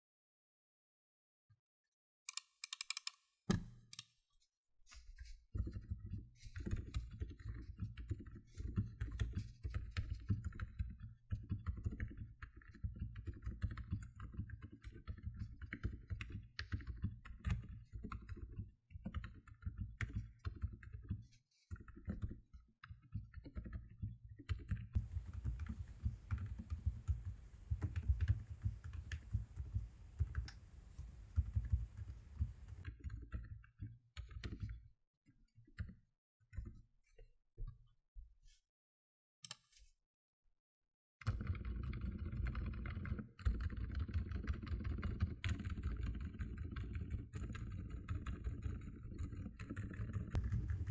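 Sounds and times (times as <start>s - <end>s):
mechanical keyboard typing: 2.3s - 3.2s, 25.0s - 32.8s.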